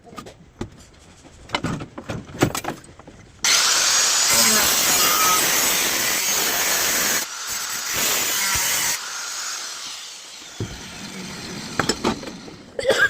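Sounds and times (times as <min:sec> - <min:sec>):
power tool hissing: 0:03.4 - 0:12.8.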